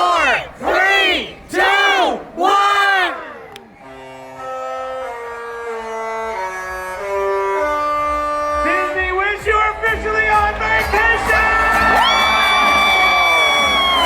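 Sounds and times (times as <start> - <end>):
crowd shouting: 0.0 - 3.6, 10.4 - 14.0
ship's horn playing a tune: 3.8 - 9.3.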